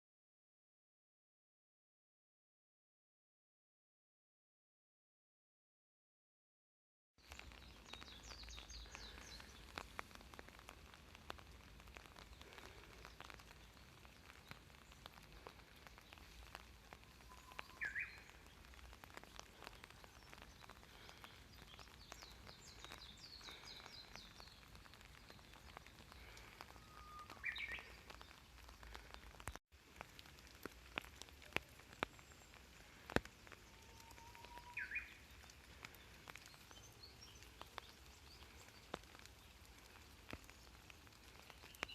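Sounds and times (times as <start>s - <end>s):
high chirps of small birds: 7.2s - 10.3s, 12.1s - 29.6s, 31.5s - 41.9s
bird singing whistled song: 17.1s - 18.3s, 26.7s - 27.9s, 33.8s - 35.2s.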